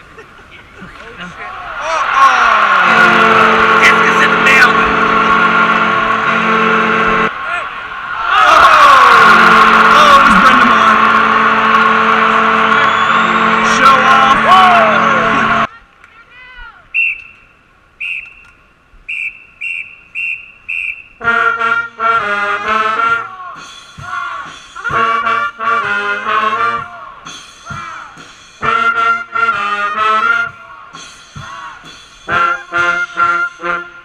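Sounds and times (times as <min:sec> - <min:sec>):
brass band playing: 0:02.1 - 0:07.5, 0:08.3 - 0:15.7, 0:21.2 - 0:34.0
short high notes: 0:02.4 - 0:07.3, 0:08.4 - 0:15.7.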